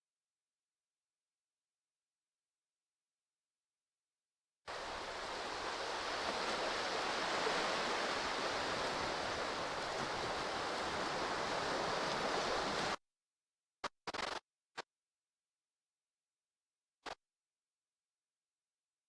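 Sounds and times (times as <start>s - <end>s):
rushing water: 4.7s - 13.0s.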